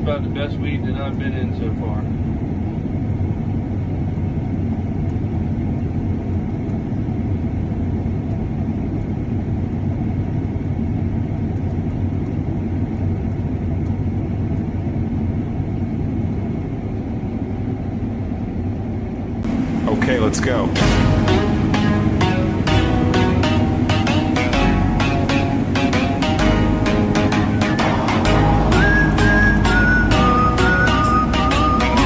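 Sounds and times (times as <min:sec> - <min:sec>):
faint steady whine: 0:00.0 - 0:32.0
combine harvester droning: 0:19.4 - 0:32.0.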